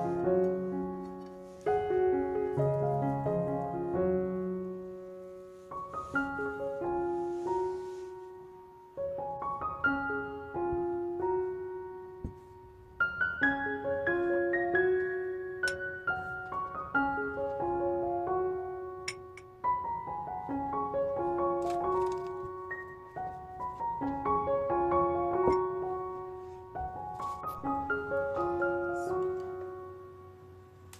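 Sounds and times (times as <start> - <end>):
slow piano music: 0.0 - 30.9.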